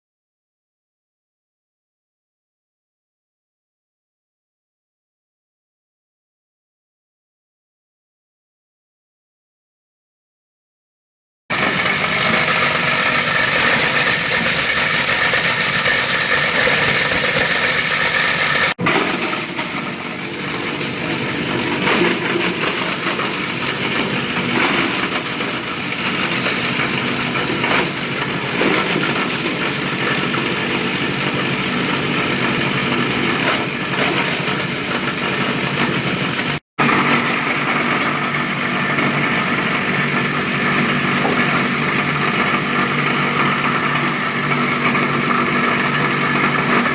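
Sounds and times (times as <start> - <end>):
plastic shredder running: 11.5 - 46.9.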